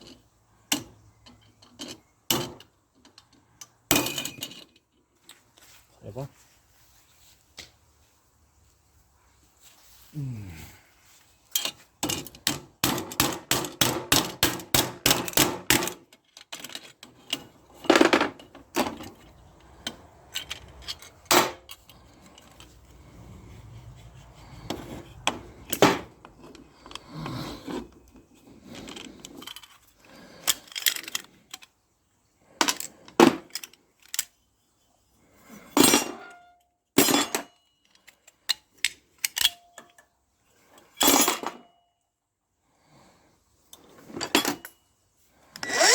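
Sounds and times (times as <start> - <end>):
scrap metal clinking and knocking: 0.0 - 5.4, 11.4 - 31.7, 32.6 - 41.7, 43.8 - 44.9.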